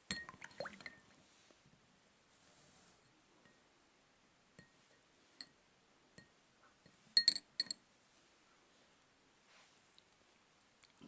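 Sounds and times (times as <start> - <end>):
metal spoon clinking glass: 7.2 - 7.8.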